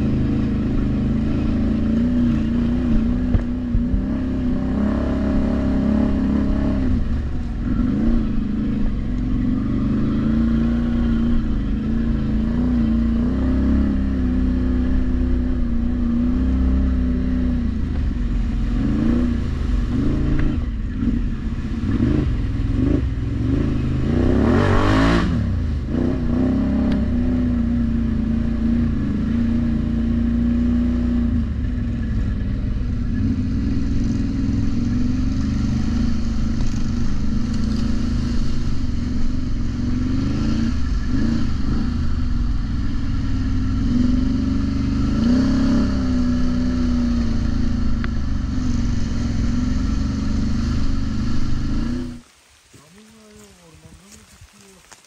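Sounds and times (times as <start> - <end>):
atv engine running: 0.0 - 52.2.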